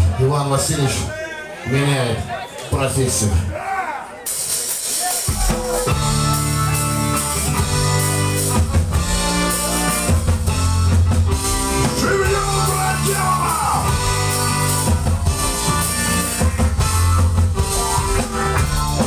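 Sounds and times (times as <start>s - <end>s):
rock band playing: 4.1s - 19.0s.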